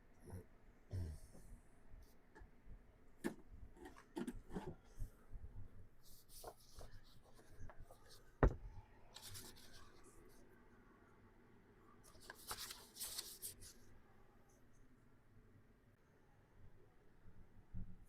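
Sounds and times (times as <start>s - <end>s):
paper rustling: 6.1s - 8.6s, 9.2s - 10.0s, 12.1s - 13.8s.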